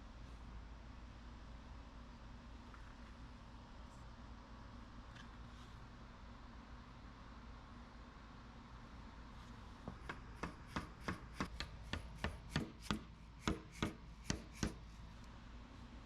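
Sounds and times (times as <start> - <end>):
sharp knocks: 9.9 - 14.8.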